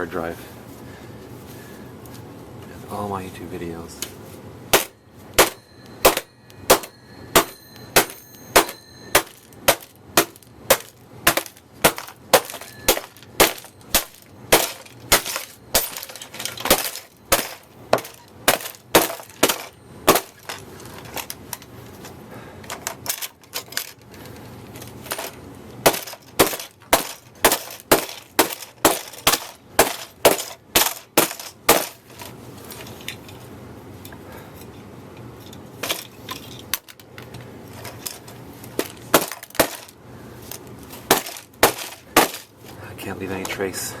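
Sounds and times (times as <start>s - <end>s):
blows smashing hard drive: 4.7s - 21.6s, 22.6s - 32.3s.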